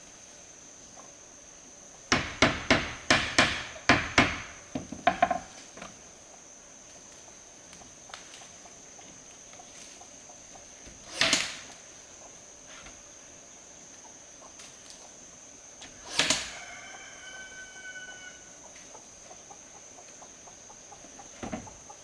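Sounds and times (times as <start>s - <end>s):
rooster crowing: 15.9s - 18.8s.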